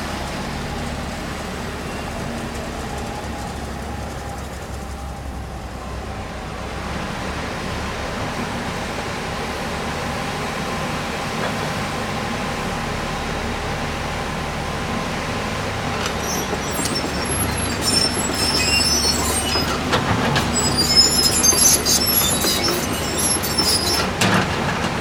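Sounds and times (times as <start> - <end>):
excavator running: 0.0 - 25.0
high metallic squeals: 16.0 - 24.2.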